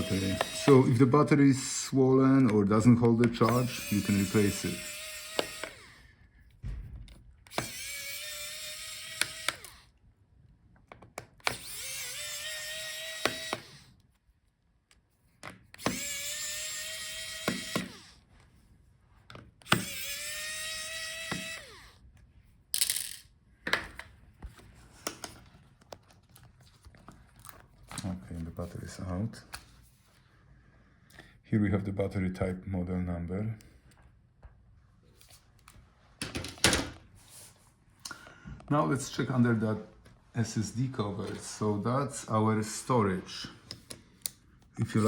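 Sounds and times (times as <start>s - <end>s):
electric screwdriver motor whine: 0.0s - 1.0s, 3.4s - 6.1s, 7.5s - 9.9s, 11.4s - 14.0s, 15.8s - 18.2s, 19.6s - 22.0s.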